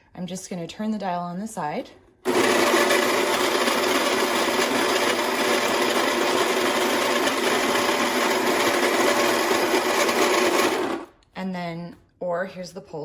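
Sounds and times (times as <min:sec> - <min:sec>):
coffee grinder grinding beans: 0:02.3 - 0:11.2.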